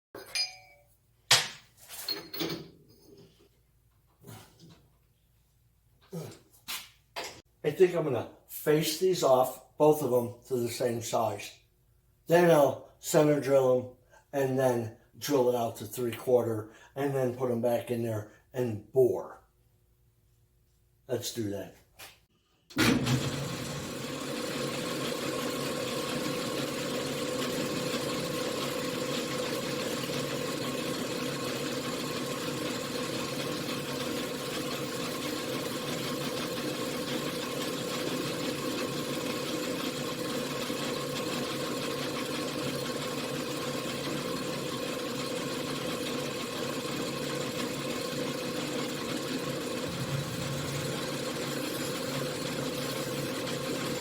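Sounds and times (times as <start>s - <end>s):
lathe motor humming: 22.8s - 54.0s.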